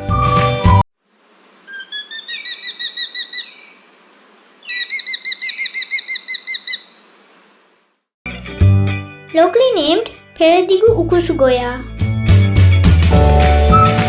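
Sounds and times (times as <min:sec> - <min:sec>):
bird calling rapid high notes: 0:01.7 - 0:03.8, 0:04.6 - 0:07.1.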